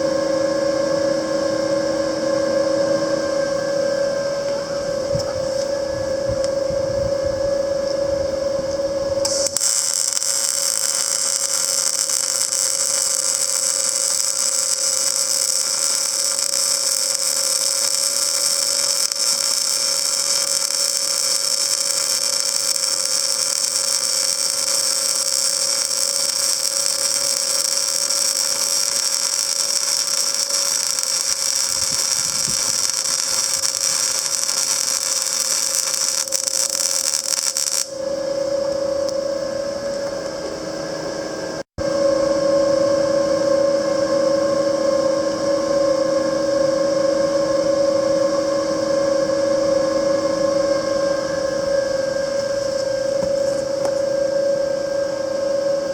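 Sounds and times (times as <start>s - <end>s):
welder machine hum: 0.0s - 55.9s
welding arc hissing: 9.2s - 38.0s.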